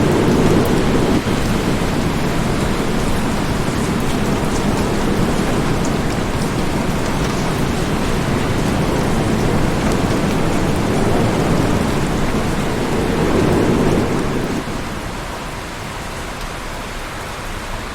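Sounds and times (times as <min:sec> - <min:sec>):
rolling rumble of thunder: 0:00.0 - 0:15.6
heavy rain: 0:00.0 - 0:17.9.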